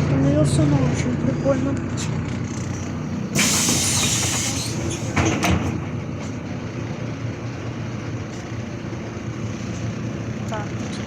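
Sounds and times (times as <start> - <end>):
bus engine idling: 0.0 - 11.0
bus doors clunking: 2.0 - 6.4
hiss of released air: 3.4 - 5.1.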